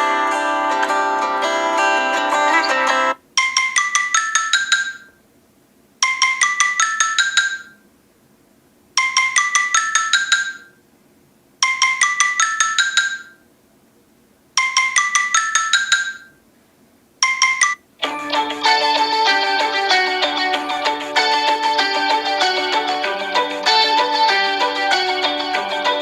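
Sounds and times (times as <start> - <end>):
marimba-like phone ringtone: 2.5 - 5.1, 6.0 - 7.8, 9.0 - 10.7, 11.6 - 13.4, 14.6 - 16.4, 17.2 - 26.0.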